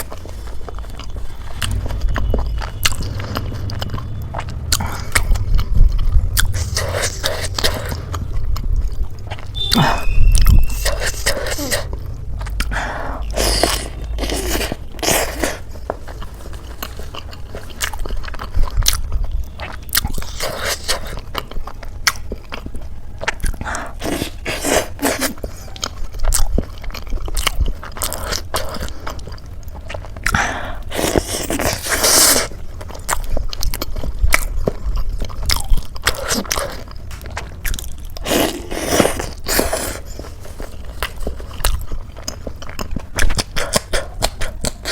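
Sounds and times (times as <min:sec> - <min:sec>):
person chewing crunchy food: 0:00.0 - 0:44.9.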